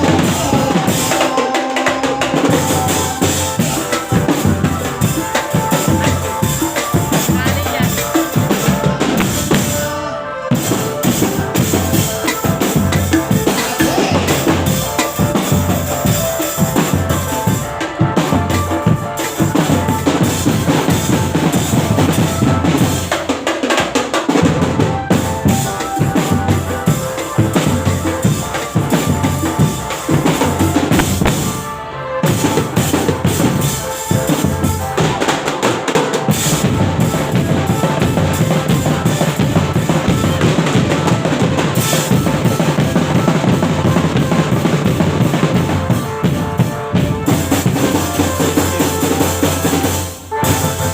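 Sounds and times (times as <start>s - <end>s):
drum-led music: 0.0s - 50.9s.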